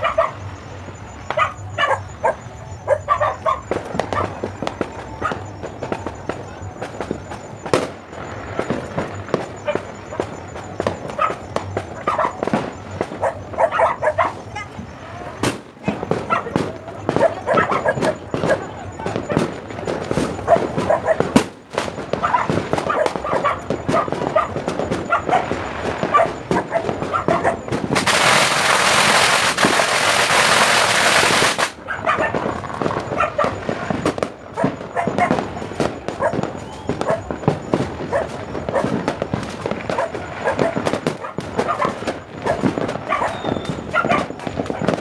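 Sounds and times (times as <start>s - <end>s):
dog barking: 0.0s - 0.5s, 1.3s - 4.5s, 5.1s - 5.5s, 9.6s - 10.4s, 11.0s - 12.5s, 13.1s - 14.8s, 15.8s - 19.6s, 20.3s - 21.4s, 22.1s - 27.8s, 31.8s - 45.0s
firecrackers popping: 0.0s - 45.0s.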